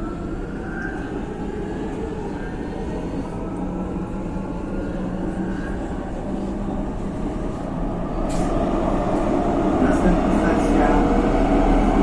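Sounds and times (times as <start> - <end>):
subway train rumbling: 0.0 - 12.0.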